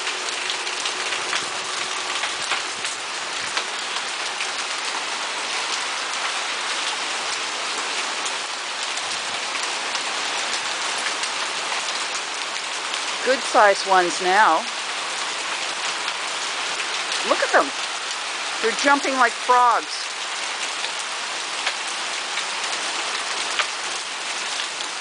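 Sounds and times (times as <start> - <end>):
hailstones ticking on surfaces: 0.0 - 5.0, 20.0 - 25.0
rain pelting down: 0.0 - 25.0.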